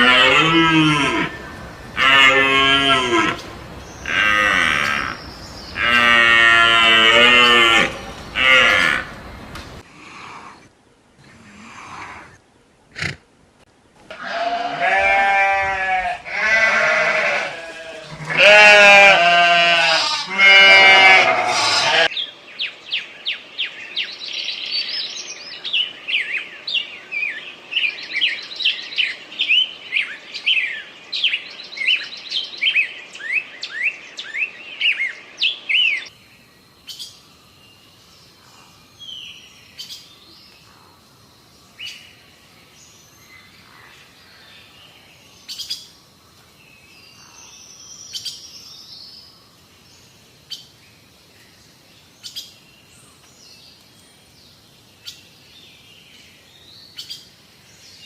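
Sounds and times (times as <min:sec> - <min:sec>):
bleating animal calls: 0:00.0 - 0:09.2, 0:14.1 - 0:22.1.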